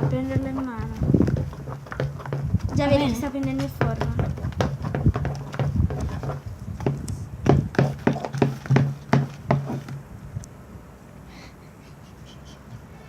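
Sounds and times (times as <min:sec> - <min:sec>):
slime stirred in a bowl: 0:00.0 - 0:07.0, 0:07.6 - 0:10.0.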